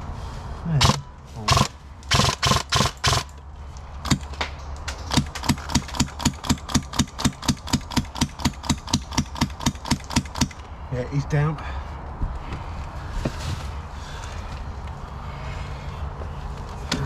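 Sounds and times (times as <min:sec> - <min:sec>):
airsoft gun shots: 0:00.8 - 0:03.3.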